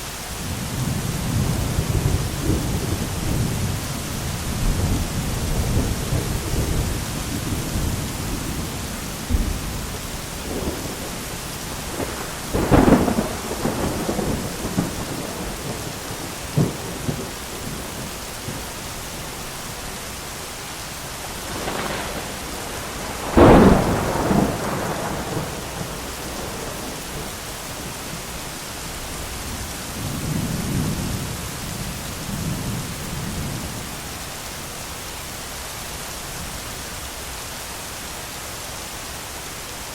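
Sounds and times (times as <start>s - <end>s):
heavy rain: 0.0s - 39.9s
rolling thunder: 0.4s - 18.7s, 21.2s - 28.3s, 29.3s - 33.8s
sharp thunderclaps: 0.5s - 18.6s, 21.3s - 28.2s.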